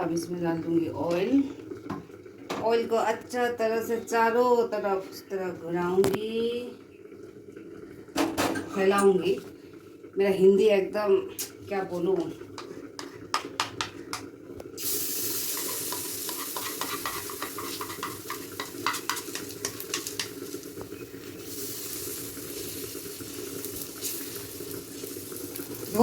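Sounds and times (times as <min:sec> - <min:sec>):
batter sizzling on a griddle: 0:12.5 - 0:26.0
utensils scraping a pan: 0:15.5 - 0:20.5.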